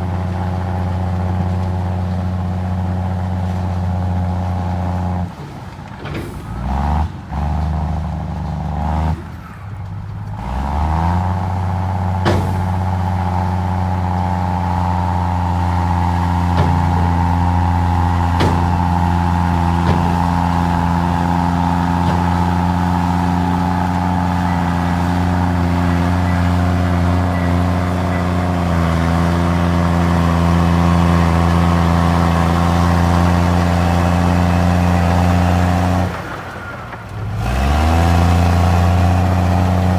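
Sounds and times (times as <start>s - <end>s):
bulldozer diesel engine under load: 0.0s - 39.9s
sharp metallic clanks: 15.7s - 30.8s.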